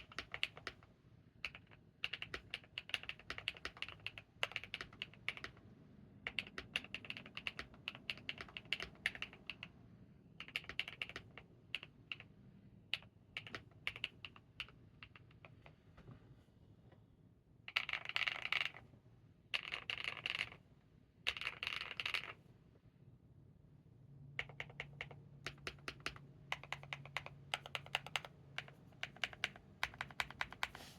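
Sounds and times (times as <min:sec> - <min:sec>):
mechanical keyboard typing: 0:00.0 - 0:05.6, 0:06.2 - 0:09.7, 0:10.4 - 0:12.3, 0:13.0 - 0:15.6, 0:17.7 - 0:18.8, 0:19.6 - 0:20.6, 0:21.3 - 0:22.4, 0:24.4 - 0:30.9.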